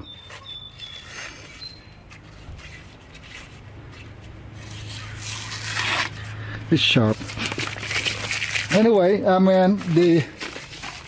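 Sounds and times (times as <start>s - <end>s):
axe blade slicing paper: 2.1s - 9.1s, 9.8s - 11.0s.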